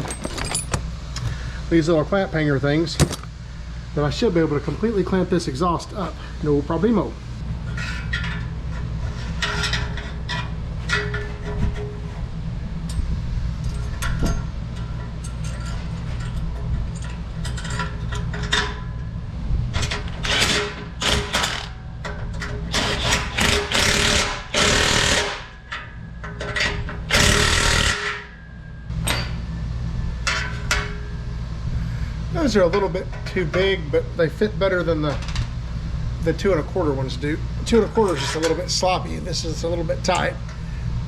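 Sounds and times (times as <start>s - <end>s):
steady low hum: 0.0s - 41.0s
power tool bursts: 20.2s - 21.7s, 22.7s - 25.6s, 27.1s - 28.3s.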